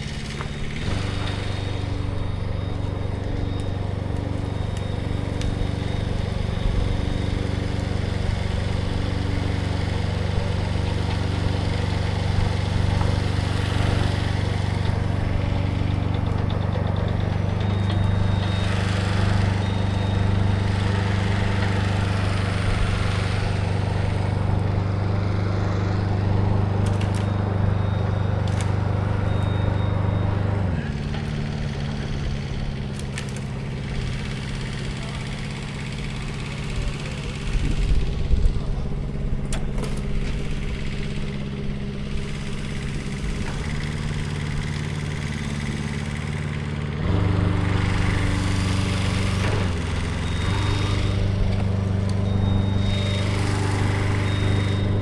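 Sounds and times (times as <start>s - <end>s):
engine idling and revving: 0.0s - 55.0s.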